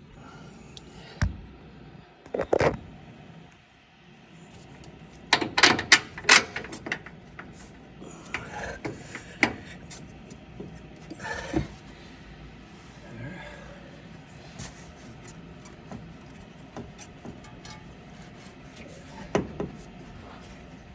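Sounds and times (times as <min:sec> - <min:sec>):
metal parts clinking: 0:05.4 - 0:07.6
metal scrapes and knocks: 0:15.7 - 0:19.8.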